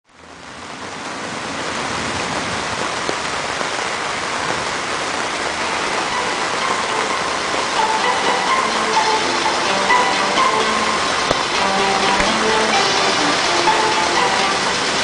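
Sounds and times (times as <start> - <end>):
steady rain falling: 0.0 - 15.0
faint music notes: 5.6 - 15.0.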